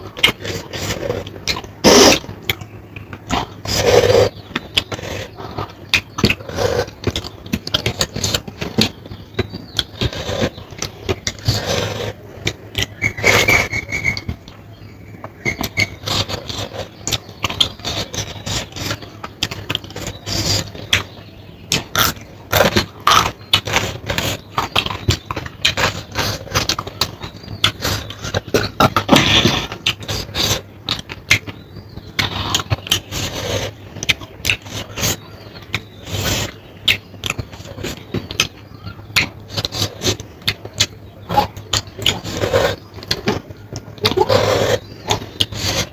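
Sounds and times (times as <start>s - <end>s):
chewing and lip smacking: 0.1s - 45.9s
food scraping on a plate: 11.3s - 12.2s, 42.0s - 45.9s.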